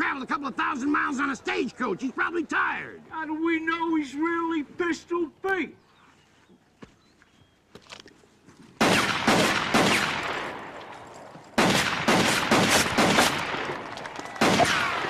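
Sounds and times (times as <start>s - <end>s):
pistol gunshots: 8.8s - 15.0s.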